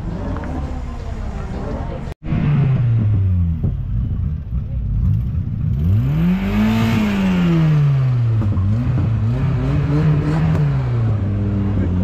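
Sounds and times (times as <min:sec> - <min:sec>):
car engine revving hard: 0:05.6 - 0:12.0.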